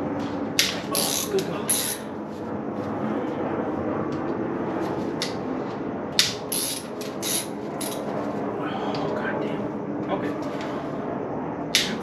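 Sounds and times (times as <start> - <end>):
shop background noise: 0.6 - 2.0.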